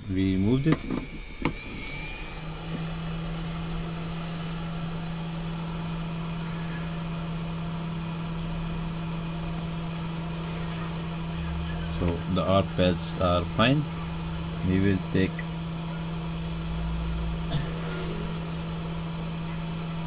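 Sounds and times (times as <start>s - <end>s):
heat gun blowing: 1.0s - 5.8s.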